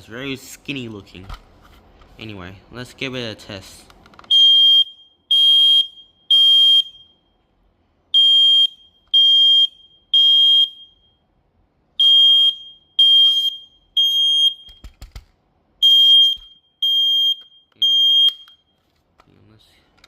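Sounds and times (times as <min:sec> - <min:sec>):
smoke alarm beeping: 0:04.3 - 0:07.4, 0:08.1 - 0:11.3, 0:12.0 - 0:14.8, 0:15.8 - 0:18.8.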